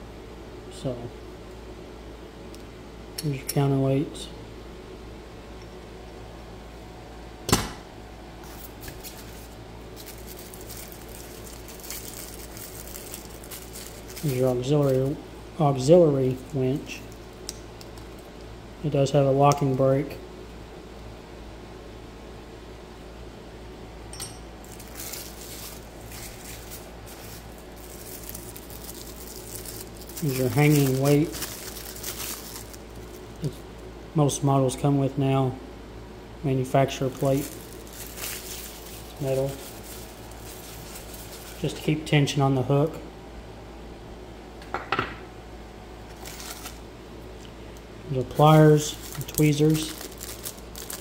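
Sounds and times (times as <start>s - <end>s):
faint steady hum: 0.0s - 51.0s
packaging crinkling: 8.4s - 15.3s, 24.6s - 33.8s, 36.8s - 41.9s, 46.0s - 46.9s, 48.3s - 51.0s.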